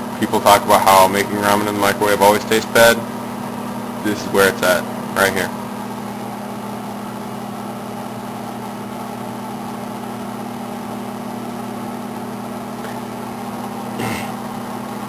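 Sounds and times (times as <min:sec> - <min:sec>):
fan whirring: 0:00.0 - 0:15.0
microwave oven electrical hum: 0:00.0 - 0:15.0.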